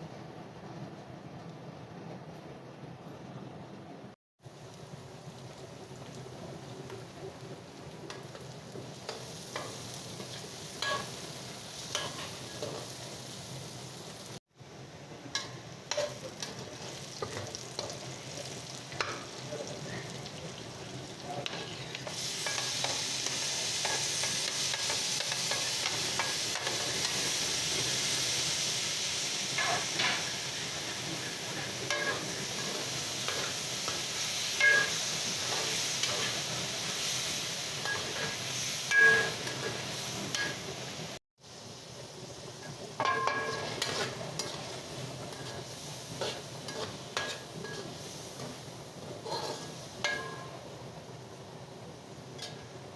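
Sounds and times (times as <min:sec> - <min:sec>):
okra sizzling in a pan: 0:04.4 - 0:52.9
spoon scraping a pan: 0:09.6 - 0:11.2, 0:11.9 - 0:12.9, 0:15.4 - 0:18.0, 0:21.4 - 0:27.3, 0:29.5 - 0:30.3, 0:31.2 - 0:34.0, 0:34.6 - 0:36.4, 0:37.8 - 0:40.6, 0:43.0 - 0:50.6.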